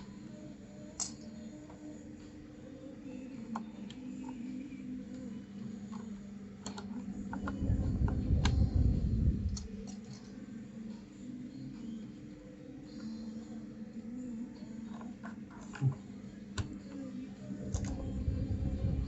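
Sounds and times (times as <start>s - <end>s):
low rumble of handling: 7.1s - 10.0s, 17.6s - 19.0s.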